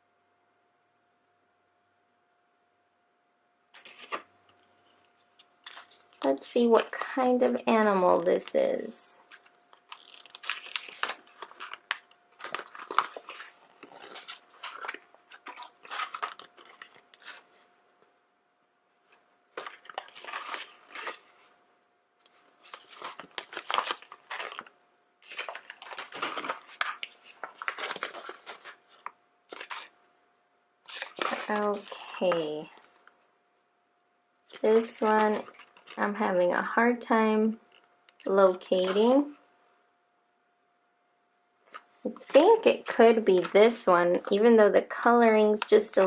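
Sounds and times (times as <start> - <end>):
faint steady hum: 0.0 - 46.0
paper rustling and crinkling: 3.7 - 17.7, 19.0 - 21.6, 22.2 - 30.0, 30.8 - 33.2, 34.5 - 36.2, 37.6 - 39.4, 41.6 - 44.4.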